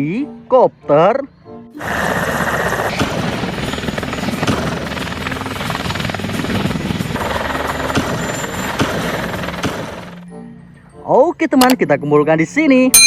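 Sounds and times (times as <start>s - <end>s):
helicopter rotor chop: 1.8s - 10.2s.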